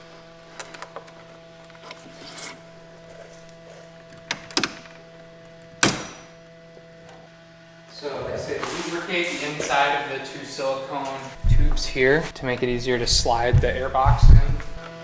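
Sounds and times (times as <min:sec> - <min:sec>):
steady low hum: 0:11.3 - 0:15.0
light clicks and knocks: 0:11.4 - 0:15.0.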